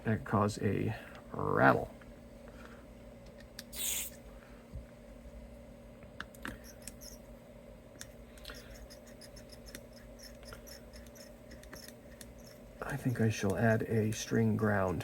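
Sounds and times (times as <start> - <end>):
faint steady hum: 0.0 - 15.0
clicks and scrapes of electronics: 8.0 - 12.6.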